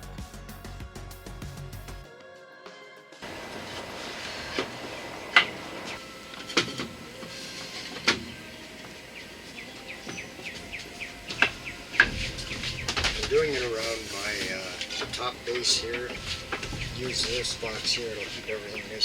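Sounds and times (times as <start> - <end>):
wooden hive parts knocking: 3.2 - 7.0, 8.0 - 19.0
small bird chirping: 8.2 - 13.6, 15.7 - 19.0.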